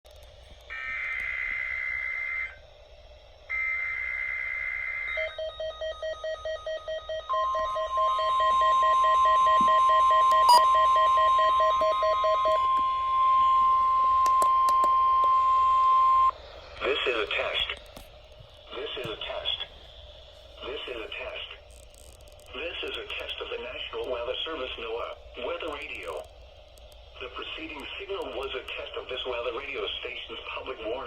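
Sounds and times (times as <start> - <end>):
steady warning alarm tone: 0.6 - 17.8
receiver alert beeps: 5.1 - 16.4.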